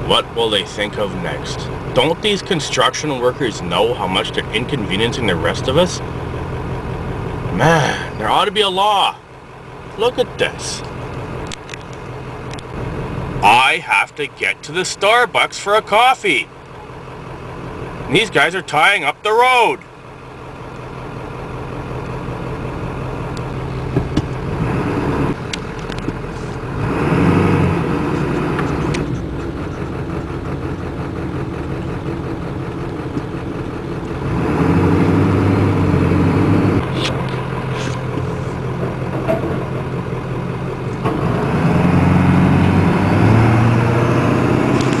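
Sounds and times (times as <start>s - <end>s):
heavy machine engine running: 19.9s - 45.0s.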